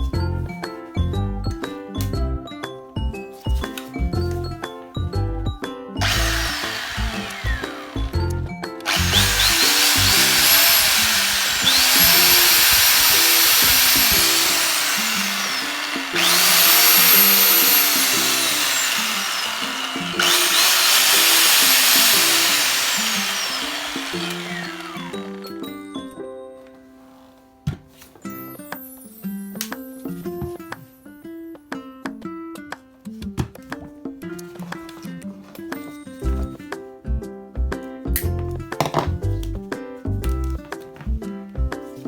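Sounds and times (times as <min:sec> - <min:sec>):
power tool motor whining: 0:06.0 - 0:08.3, 0:08.9 - 0:25.6.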